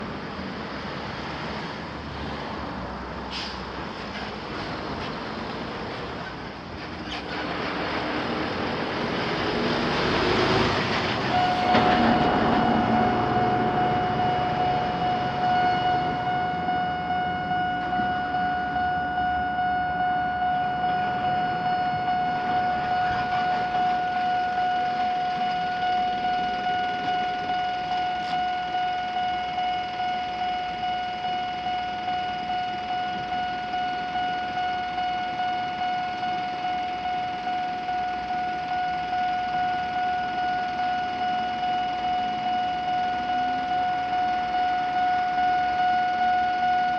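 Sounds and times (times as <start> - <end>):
rushing noise: 0.0 - 46.3
high-pitched warning alarm: 9.3 - 46.9
electronic level crossing bell: 11.3 - 46.9.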